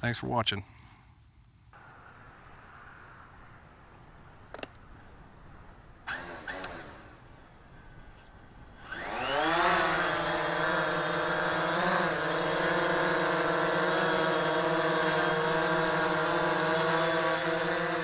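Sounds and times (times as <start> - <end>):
quadcopter motors whining: 4.5 - 18.0.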